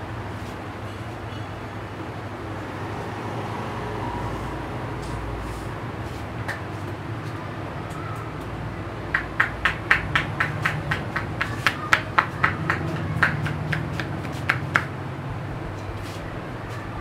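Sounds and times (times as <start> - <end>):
hands slapping on head: 6.4 - 6.9, 9.1 - 15.0.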